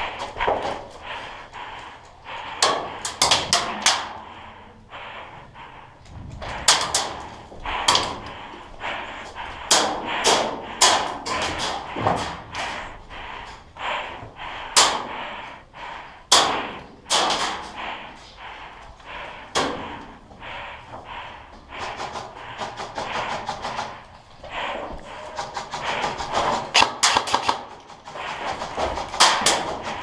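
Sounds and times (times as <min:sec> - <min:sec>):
airsoft guns firing: 0:16.3 - 0:17.6, 0:25.4 - 0:28.4, 0:29.0 - 0:29.8.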